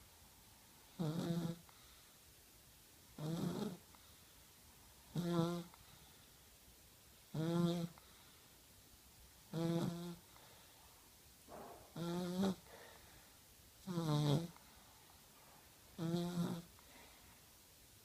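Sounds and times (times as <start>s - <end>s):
child snoring: 0.9s - 1.7s, 3.2s - 3.9s, 5.1s - 5.8s, 7.3s - 8.0s, 9.5s - 10.3s, 12.0s - 12.8s, 13.8s - 14.6s, 16.0s - 16.7s.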